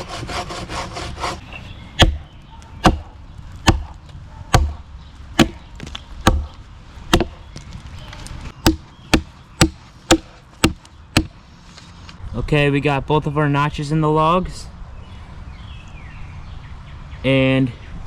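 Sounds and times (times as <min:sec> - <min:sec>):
axe chopping log: 0:02.0 - 0:07.5, 0:08.6 - 0:11.4.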